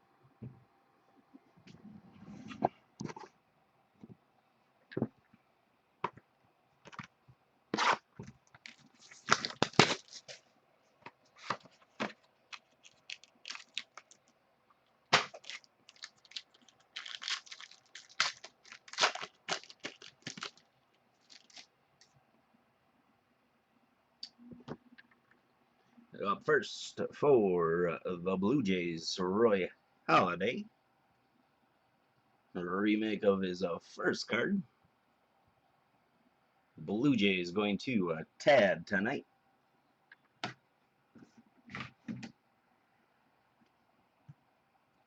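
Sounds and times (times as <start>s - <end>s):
cards scraping: 7.8s - 10.4s
plastic wrapping tearing and crinkling: 7.8s - 10.4s, 11.4s - 14.3s, 15.1s - 21.7s.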